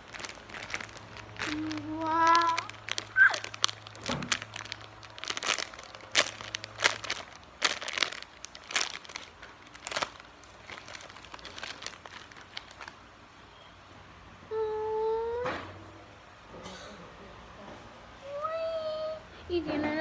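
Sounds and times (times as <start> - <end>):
plastic packaging crinkling: 0.0 - 13.1.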